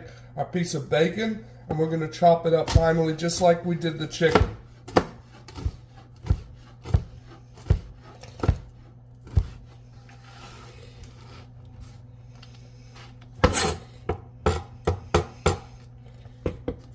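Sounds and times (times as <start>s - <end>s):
knife chopping on cutting board: 4.2s - 9.7s, 13.4s - 15.7s.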